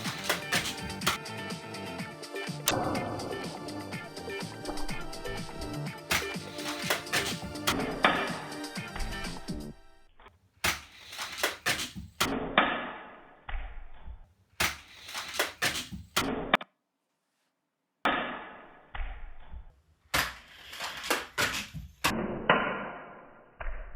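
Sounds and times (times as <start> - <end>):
toy blaster firing: 0.0 - 1.2
toy cars hitting track: 0.0 - 1.2, 6.1 - 7.9, 10.6 - 12.3, 14.6 - 16.0.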